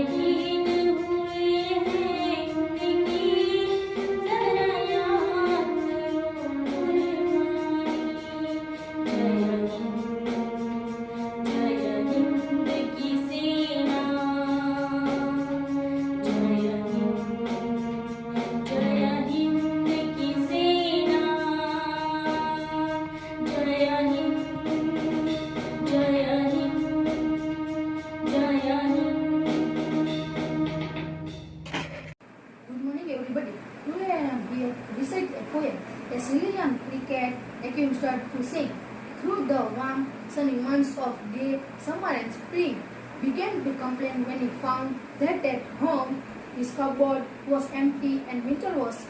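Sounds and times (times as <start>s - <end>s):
young female voice singing: 0.0s - 10.2s, 11.4s - 17.3s, 18.6s - 27.3s, 28.3s - 29.3s
instrumental accompaniment: 0.0s - 32.2s
high singing voice: 18.4s - 30.0s.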